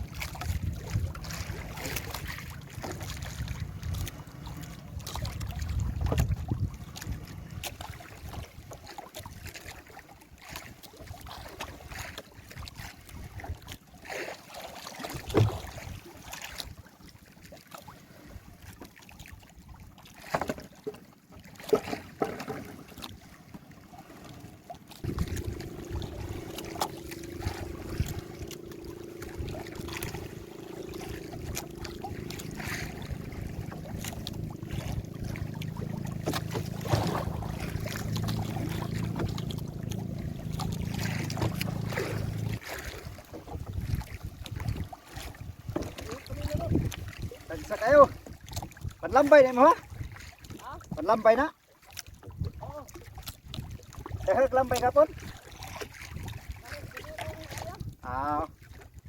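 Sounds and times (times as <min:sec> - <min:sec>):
water noise: 0:00.0 - 0:59.0
wind noise: 0:05.0 - 0:07.5, 0:25.0 - 0:28.4, 0:43.5 - 0:47.3
steady low hum: 0:25.0 - 0:42.6.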